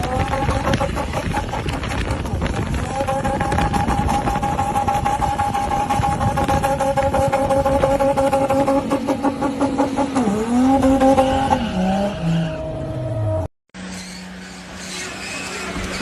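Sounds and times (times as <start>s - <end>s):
rough crackling noise: 0.0s - 8.9s
off-road vehicle engine running hard: 0.0s - 12.4s, 13.2s - 16.0s.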